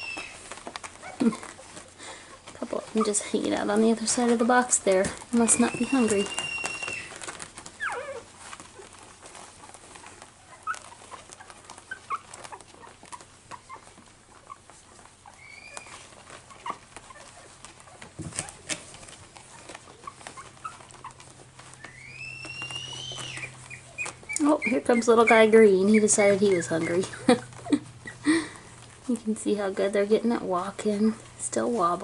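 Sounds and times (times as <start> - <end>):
puppies squeaking and whimpering: 0.0 - 29.1
puppy whining: 0.0 - 29.3
soft clicks and rustles: 0.0 - 32.0.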